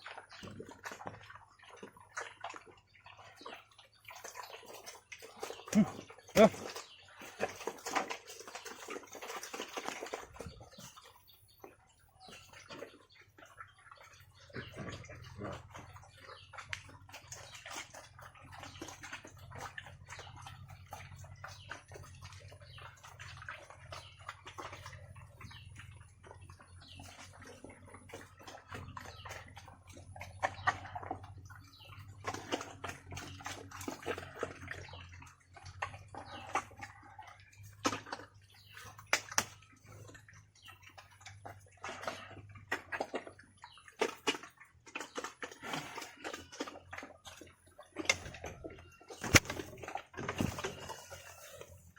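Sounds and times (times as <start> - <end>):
pigs eating wet feed: 0.0 - 51.9.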